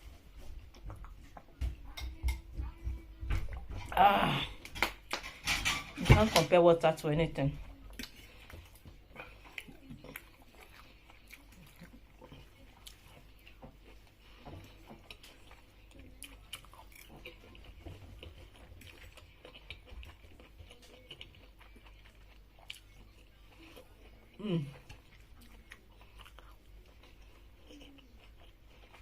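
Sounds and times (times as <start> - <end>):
person chewing and biting food: 7.6 - 29.0.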